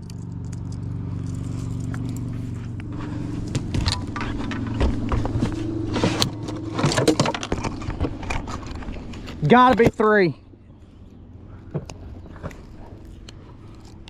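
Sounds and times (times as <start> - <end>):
electric motor hum: 0.0 - 9.7
rattling clicks and knocks: 0.0 - 10.1.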